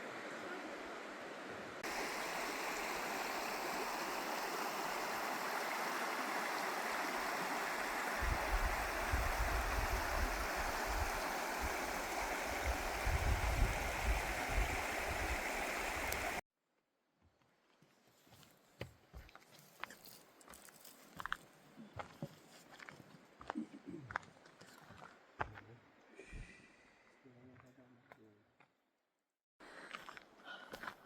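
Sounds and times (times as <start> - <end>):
river water rushing: 0.0 - 16.4.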